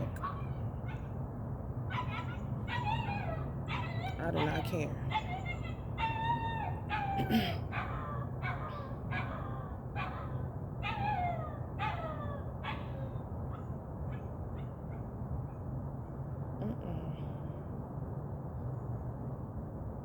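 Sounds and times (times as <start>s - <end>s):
steady low hum: 0.0s - 20.0s
puppy yelping and whining: 0.2s - 1.1s, 1.9s - 15.0s.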